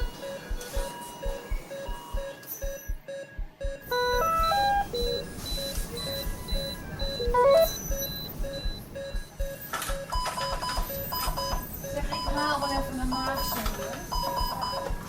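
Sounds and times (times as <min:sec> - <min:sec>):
rising multi-note alarm tone: 0:00.0 - 0:08.2
short high beeps: 0:00.0 - 0:14.9
short low beeps: 0:00.0 - 0:15.0.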